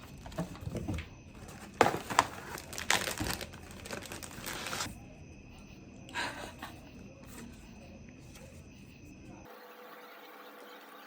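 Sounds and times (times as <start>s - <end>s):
packaging crinkling and rustling: 0.2s - 4.9s.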